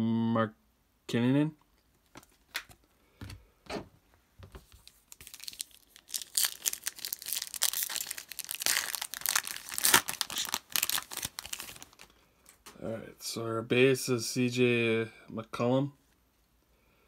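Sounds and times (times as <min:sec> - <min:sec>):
plastic wrapper tearing and crinkling: 0:04.6 - 0:12.1.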